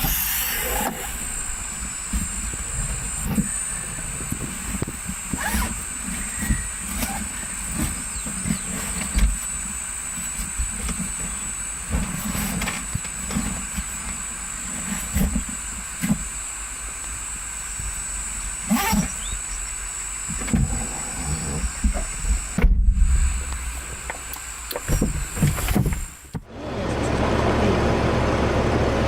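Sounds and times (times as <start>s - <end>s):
vehicle engine rumble: 0.0s - 14.7s, 19.2s - 29.0s
high-pitched whine: 0.0s - 29.0s
short knocks and thuds: 24.8s - 26.5s.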